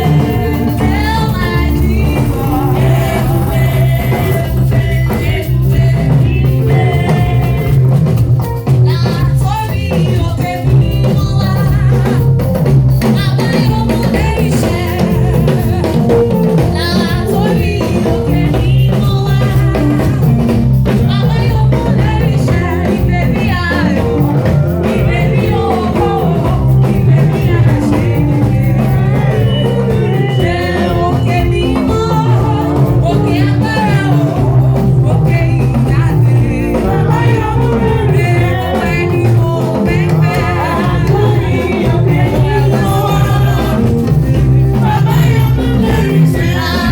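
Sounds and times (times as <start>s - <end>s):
person singing: 0.0s - 8.1s, 8.9s - 46.9s
drum kit and bass groove: 0.0s - 46.9s.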